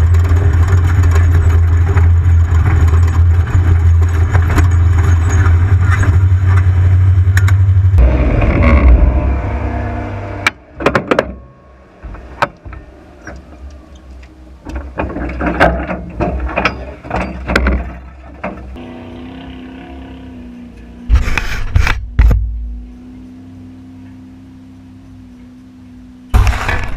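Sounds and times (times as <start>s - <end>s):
sharp knocks and clatter: 0.0s - 7.6s, 14.6s - 18.8s
race vehicle engine running: 0.0s - 15.4s, 16.4s - 26.9s.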